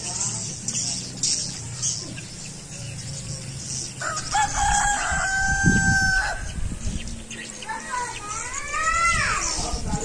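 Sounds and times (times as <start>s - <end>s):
rooster crowing: 4.0s - 6.5s.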